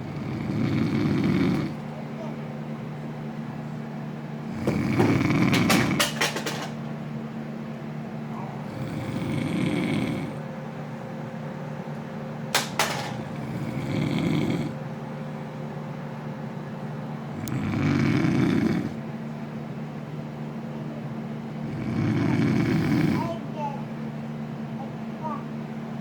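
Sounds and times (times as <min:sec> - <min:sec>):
man snoring loudly: 0:00.0 - 0:01.8, 0:04.5 - 0:05.6, 0:08.6 - 0:10.4, 0:13.4 - 0:14.8, 0:17.4 - 0:19.0, 0:21.6 - 0:23.3
steady low hum: 0:00.0 - 0:26.0.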